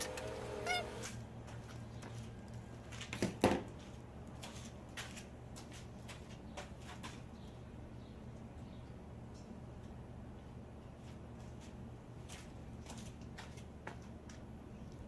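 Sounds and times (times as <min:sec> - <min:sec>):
steady low hum: 0:00.0 - 0:02.6.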